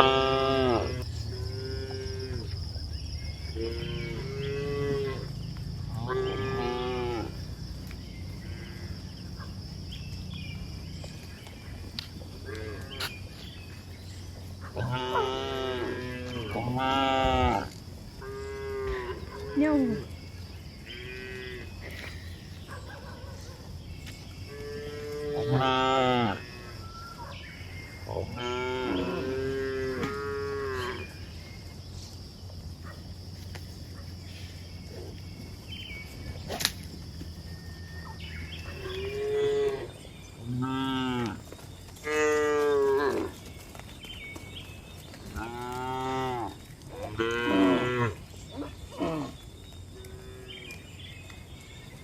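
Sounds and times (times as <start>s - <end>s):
cows mooing: 0.0s - 2.5s, 3.5s - 7.5s, 14.8s - 20.0s, 20.8s - 22.0s, 24.4s - 26.8s, 28.1s - 31.1s, 38.8s - 41.4s, 42.0s - 43.4s, 45.3s - 49.4s.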